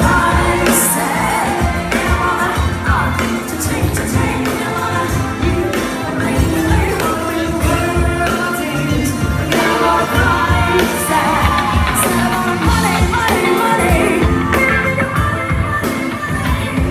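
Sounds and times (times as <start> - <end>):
drums and cymbals: 0.0 - 16.9
live band playing: 0.0 - 16.9
person singing: 0.0 - 16.9.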